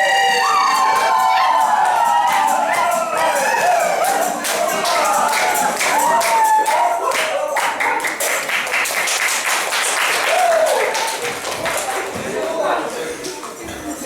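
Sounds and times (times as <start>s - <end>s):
voices calling or singing: 0.0s - 8.0s
group clapping hands: 0.3s - 12.6s.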